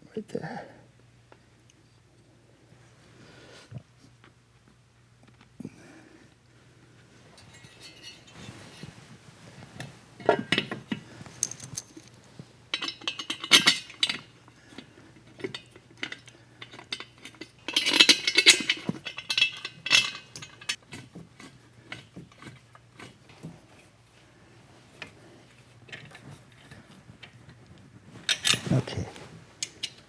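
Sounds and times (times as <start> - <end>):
metal tools clinking: 7.4 - 8.9, 10.2 - 20.8, 28.3 - 29.0.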